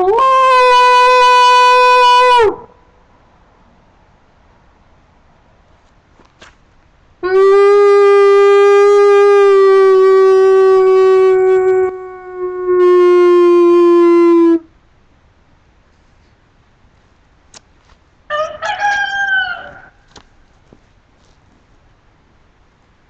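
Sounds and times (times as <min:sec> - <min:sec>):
person howling like a wolf: 0:00.0 - 0:02.6, 0:07.2 - 0:14.6.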